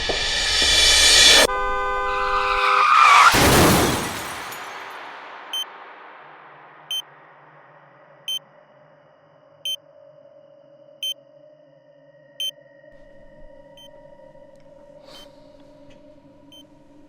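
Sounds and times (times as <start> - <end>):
loud crash: 0.0 - 6.9
car horn blaring: 0.8 - 4.7.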